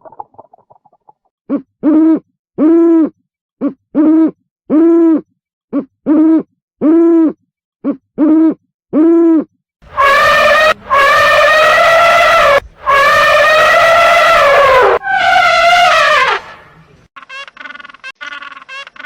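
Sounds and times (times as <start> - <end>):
animal hooting calls: 9.9 - 16.6
harsh loud animal call: 9.9 - 16.6.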